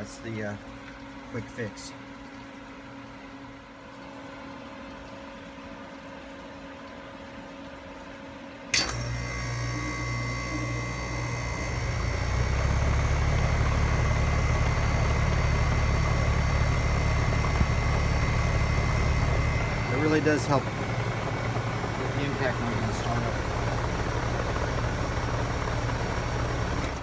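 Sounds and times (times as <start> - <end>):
condensing unit running hum: 0.0 - 27.0
compressor clack: 8.7 - 9.2.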